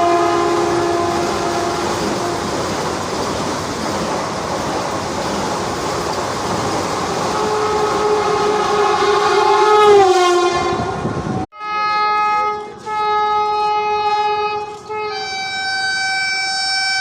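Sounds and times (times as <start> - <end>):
train horn blast: 0.0 - 2.8, 7.2 - 17.0
train passing at speed: 0.0 - 17.0.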